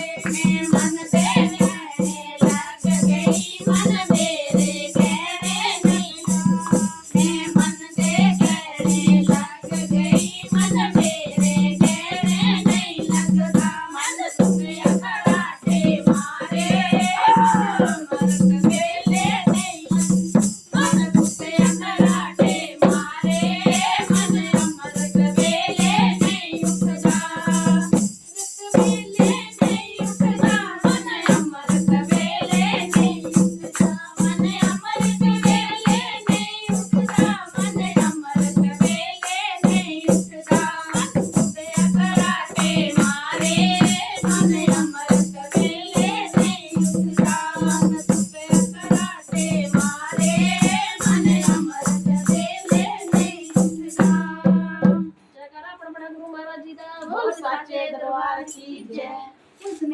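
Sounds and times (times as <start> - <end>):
hand percussion: 0.0 - 55.3
person singing: 16.3 - 18.3.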